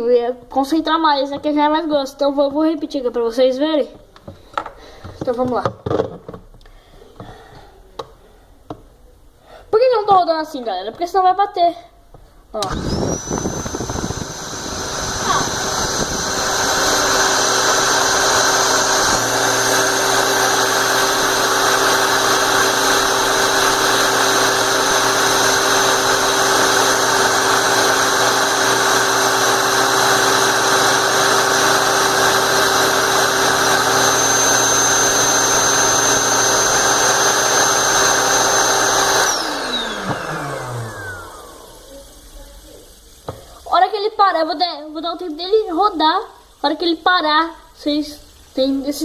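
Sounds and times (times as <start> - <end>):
air mattress inflator whining: 12.6 - 42.3.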